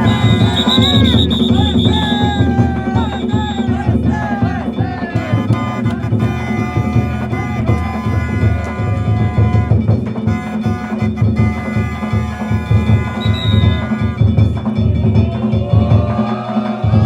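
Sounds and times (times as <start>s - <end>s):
steady held higher tones: 0.0s - 4.2s, 13.2s - 14.2s
fast rhythmic drumming: 0.0s - 17.0s.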